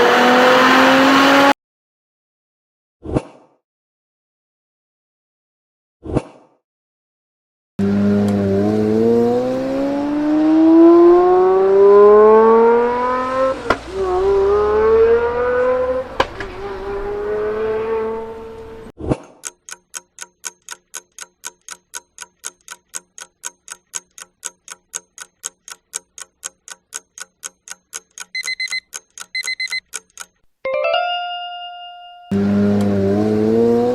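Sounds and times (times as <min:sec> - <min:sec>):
car engine accelerating: 0:00.0 - 0:01.6, 0:07.8 - 0:18.9, 0:32.3 - 0:33.9
clock-like ticking: 0:19.4 - 0:30.4.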